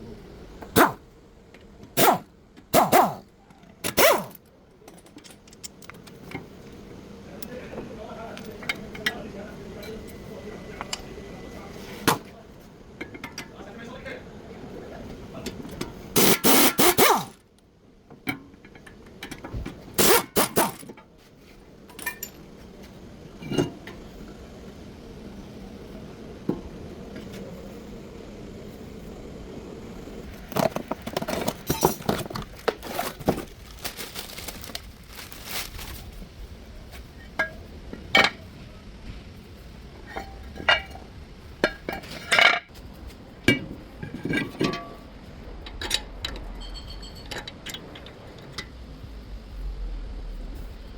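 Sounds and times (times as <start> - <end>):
metal tools clinking and knocking: 3.9 - 6.0, 21.9 - 22.4, 30.7 - 33.4, 45.7 - 48.2.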